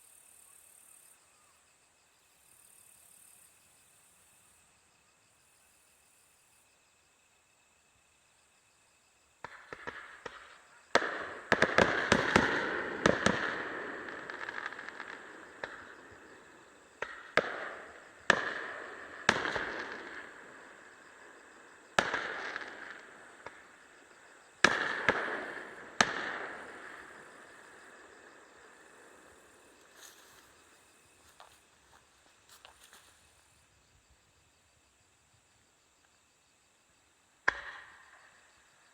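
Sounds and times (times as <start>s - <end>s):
insects chirring: 0.0s - 38.9s
fireworks bangs: 9.4s - 31.5s
fireworks crackling: 9.4s - 33.4s.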